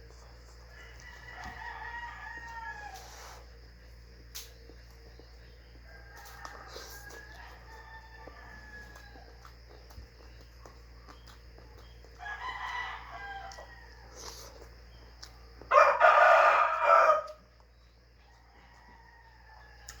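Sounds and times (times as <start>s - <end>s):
rooster crowing: 0.7s - 3.4s, 5.8s - 9.4s, 12.1s - 14.4s, 15.7s - 17.5s, 18.2s - 20.0s.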